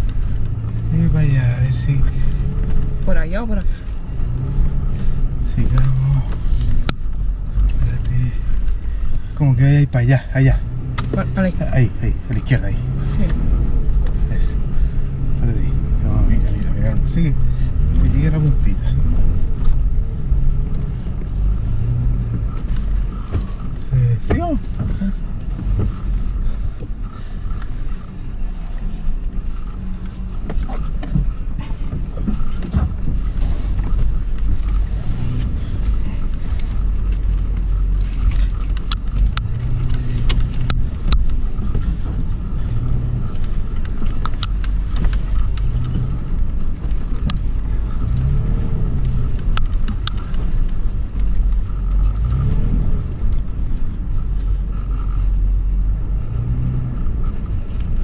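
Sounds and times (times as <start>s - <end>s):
engine rumbling under load: 0.0s - 58.0s.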